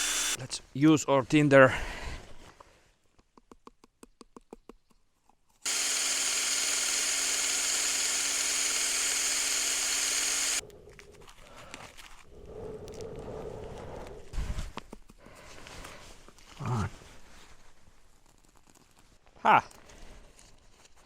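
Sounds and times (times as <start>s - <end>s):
cordless drill whirring: 0.0s - 0.4s, 5.7s - 10.6s.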